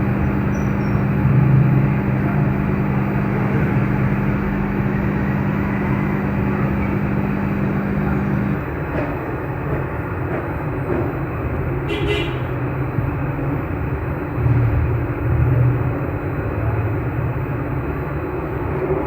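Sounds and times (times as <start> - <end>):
rushing machine noise: 0.0 - 11.7.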